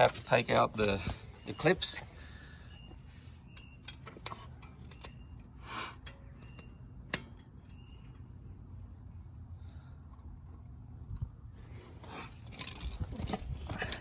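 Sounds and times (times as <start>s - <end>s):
small metallic clicks and ticks: 3.5s - 8.3s.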